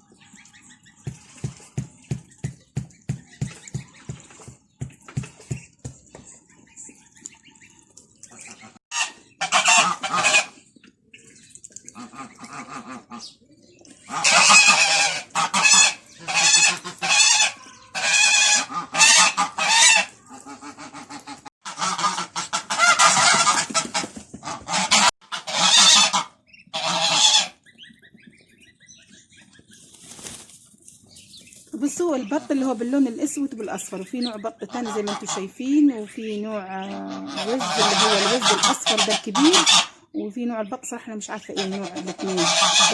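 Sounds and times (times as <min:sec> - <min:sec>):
geese honking: 0:06.2 - 0:13.4, 0:14.0 - 0:29.8, 0:31.8 - 0:40.2, 0:41.3 - 0:42.9.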